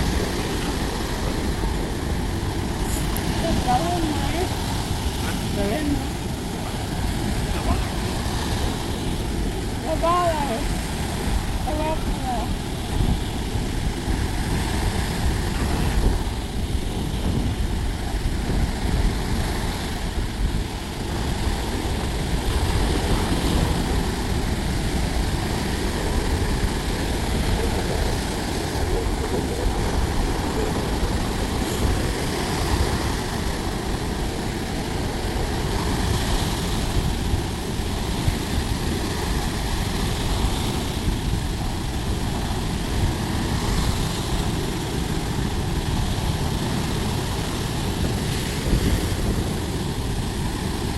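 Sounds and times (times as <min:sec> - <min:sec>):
surf roaring on shore: 0:00.0 - 0:50.9
wind rumble on microphone: 0:00.0 - 0:50.9.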